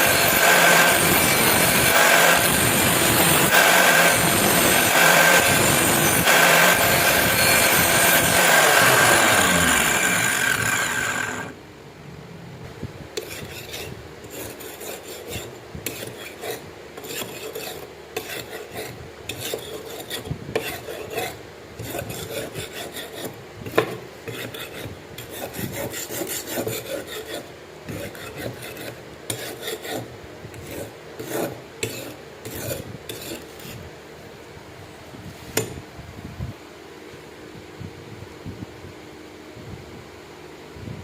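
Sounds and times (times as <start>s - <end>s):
knife blade rasping on abrasive: 0.0s - 11.6s, 13.2s - 33.8s.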